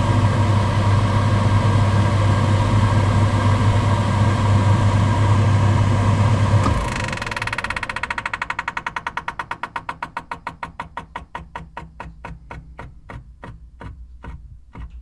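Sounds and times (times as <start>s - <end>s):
cooker hood fan winding down: 0.0s - 10.0s.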